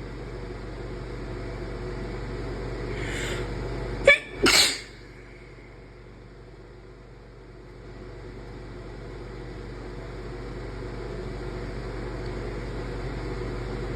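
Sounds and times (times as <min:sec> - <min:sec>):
person breathing in: 0:02.9 - 0:03.5
person sneezing: 0:04.0 - 0:05.0.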